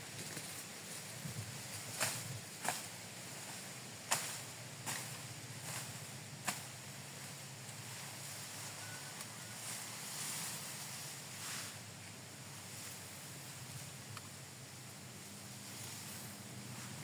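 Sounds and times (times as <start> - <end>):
wind buffeting microphone: 0.0 - 8.3
grass rustling: 0.0 - 17.0.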